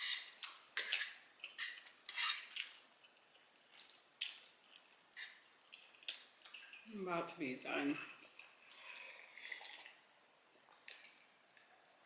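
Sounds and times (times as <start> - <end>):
cutlery scraping a plate: 0.0 - 2.5.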